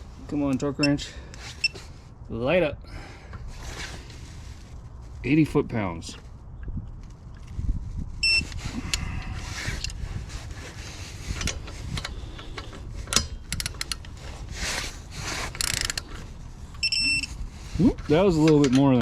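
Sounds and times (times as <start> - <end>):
torque wrench beep: 8.2 - 8.5, 16.8 - 17.3
wrench clicks and handling: 11.4 - 14.2, 15.6 - 16.2.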